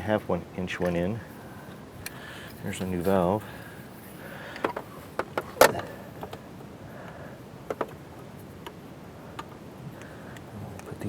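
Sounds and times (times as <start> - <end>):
plastic valve parts clicking: 4.5 - 6.4.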